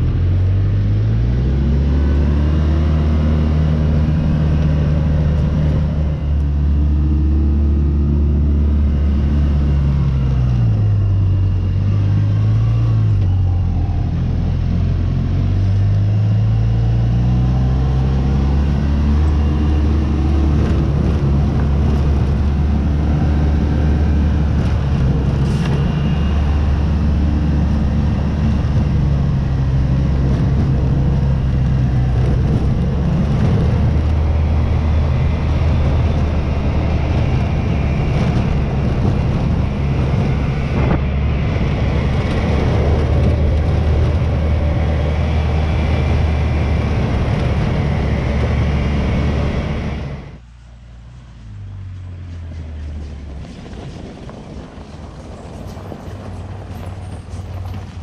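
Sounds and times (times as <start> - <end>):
vehicle engine running while driving: 0.0 - 58.0.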